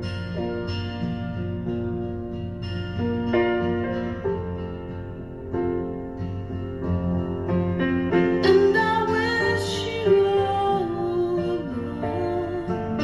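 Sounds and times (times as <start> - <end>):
piano chords: 0.0 - 13.0
woman singing: 8.4 - 13.0.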